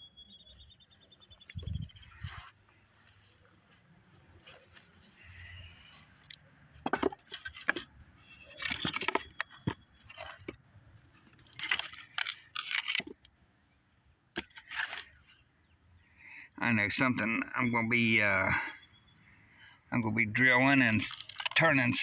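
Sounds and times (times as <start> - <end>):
crunching and knocking: 6.8 - 10.6, 11.2 - 13.2, 20.6 - 22.0.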